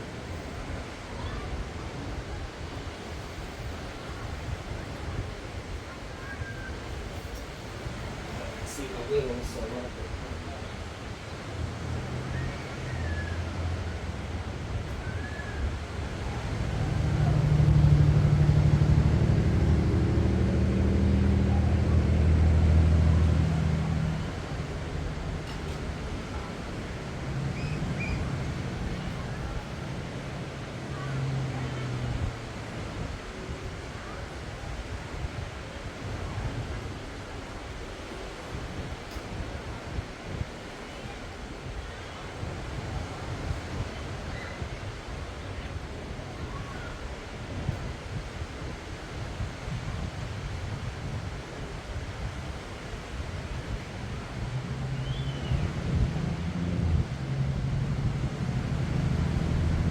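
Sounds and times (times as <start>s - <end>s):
ocean surf on beach: 0.0s - 59.9s
wind buffeting microphone: 0.0s - 59.9s
motor engine humming: 16.0s - 32.4s.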